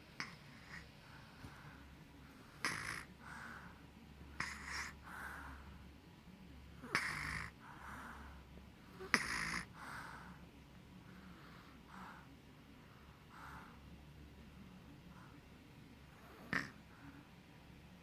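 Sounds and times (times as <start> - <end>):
person snoring: 16.2 - 16.8.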